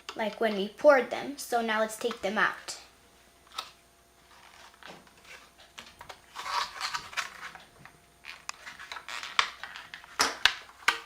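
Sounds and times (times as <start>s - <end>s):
plastic moulds crinkling: 3.5s - 11.0s.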